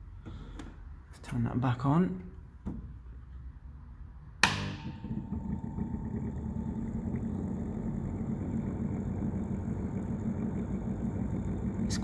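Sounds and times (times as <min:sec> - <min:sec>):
fan switch click: 0:04.4 - 0:05.0
fan running with warbling rattle: 0:04.9 - 0:12.0.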